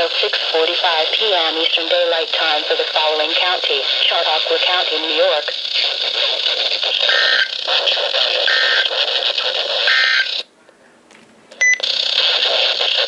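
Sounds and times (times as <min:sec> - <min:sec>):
radio static: 0:00.0 - 0:10.4, 0:11.7 - 0:13.0.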